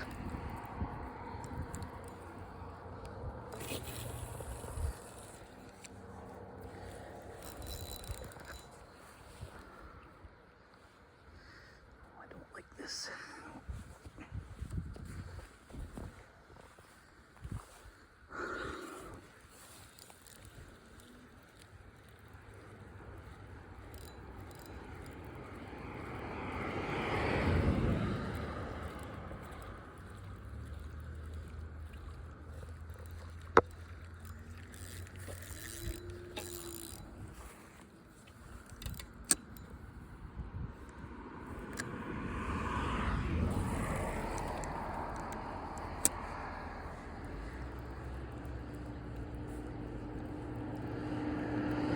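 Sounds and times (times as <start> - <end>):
vehicle passing by: 24.2 - 37.5, 40.6 - 51.9.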